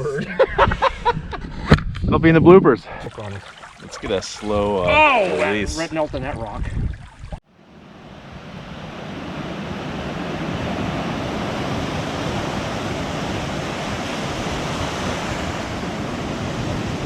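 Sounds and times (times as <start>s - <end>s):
stream flowing: 3.0s - 16.2s.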